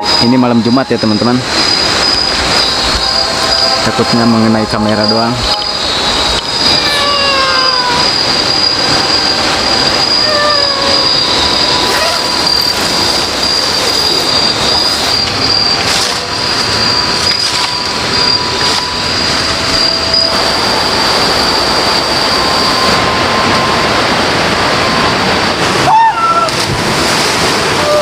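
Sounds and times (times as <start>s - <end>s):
insect chorus drone: 0.0s - 25.4s
falling whistled animal calls: 5.0s - 15.9s.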